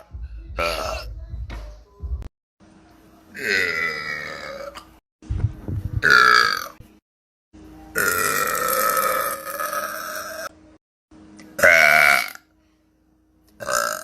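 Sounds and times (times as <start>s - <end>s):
woman belching: 3.4s - 4.9s, 6.0s - 6.8s, 8.0s - 10.5s, 11.6s - 12.4s, 13.6s - 14.0s.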